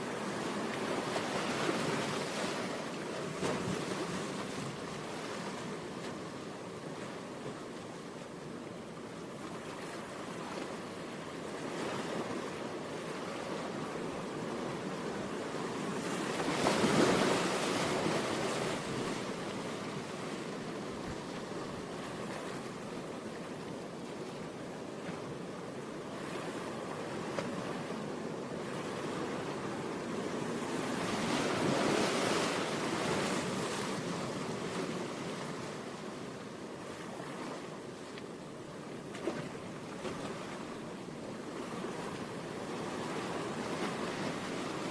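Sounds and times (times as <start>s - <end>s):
ocean waves rushing: 14.8s - 22.6s, 28.9s - 35.8s.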